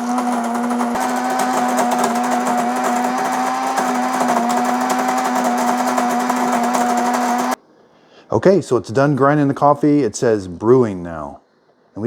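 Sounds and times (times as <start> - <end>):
coffee grinder grinding beans: 0.0 - 7.6.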